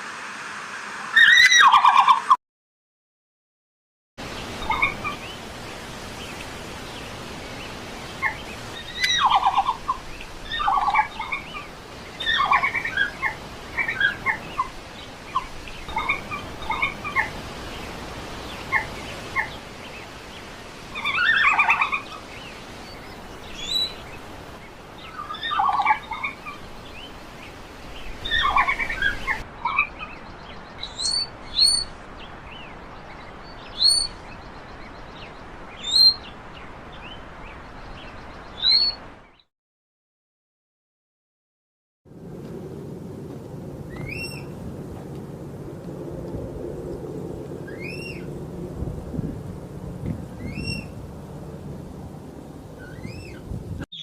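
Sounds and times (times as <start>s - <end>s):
red panda twittering chirps: 30.8s - 31.9s, 33.7s - 34.2s, 52.9s - 54.0s.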